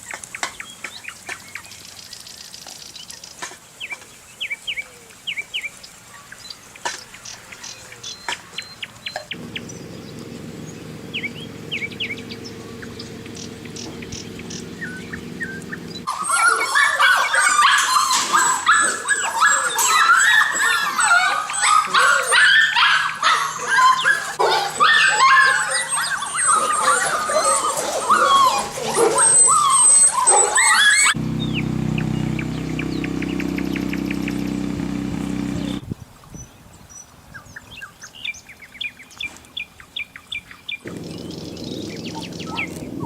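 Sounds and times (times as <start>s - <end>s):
faint chirps and clicks: 6.8s - 16.1s, 31.1s - 35.8s, 40.9s - 43.0s
low hum: 9.4s - 16.1s, 31.2s - 35.8s, 40.9s - 43.0s
dogs whining and howling: 9.4s - 31.2s, 40.9s - 43.0s.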